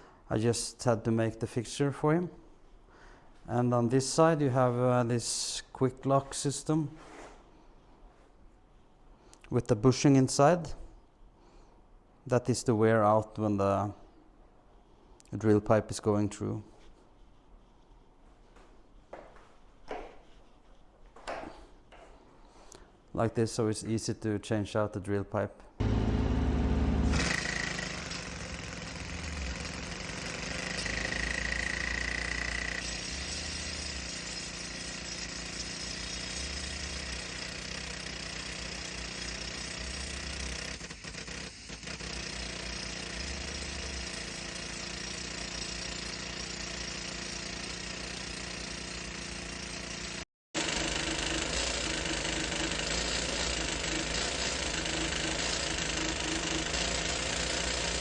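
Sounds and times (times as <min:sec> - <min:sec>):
engine running: 0:25.8 - 0:37.9
jackhammer hammering: 0:25.8 - 0:58.0.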